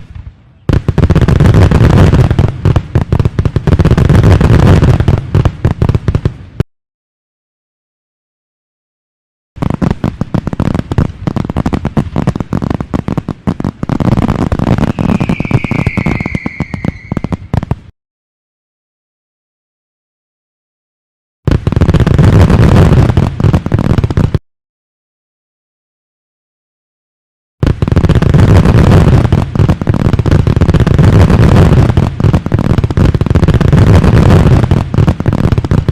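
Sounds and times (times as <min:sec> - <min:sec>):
fireworks bangs and crackles: 0:00.0 - 0:06.6, 0:09.6 - 0:17.9, 0:21.4 - 0:24.4, 0:27.6 - 0:35.9
high whistle falling in pitch: 0:14.8 - 0:17.5.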